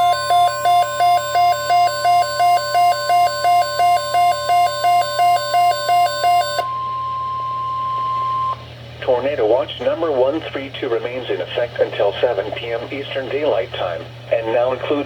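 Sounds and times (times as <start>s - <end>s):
steady alarm tone: 0.0s - 8.6s
two-pitch electronic alarm beeping: 0.0s - 8.6s.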